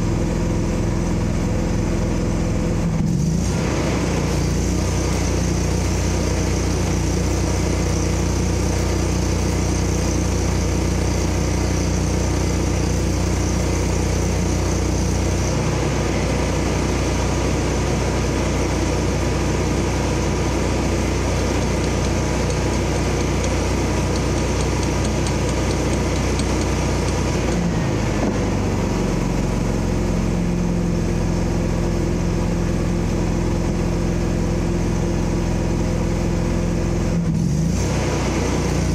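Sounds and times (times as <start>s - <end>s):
engine idling: 0.0s - 38.9s.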